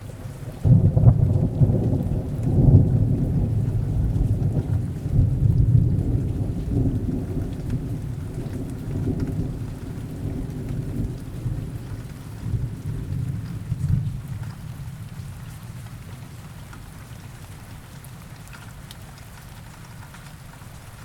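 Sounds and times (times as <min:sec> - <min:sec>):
rain falling: 0:00.0 - 0:21.0
thunder rumbling: 0:00.1 - 0:15.2.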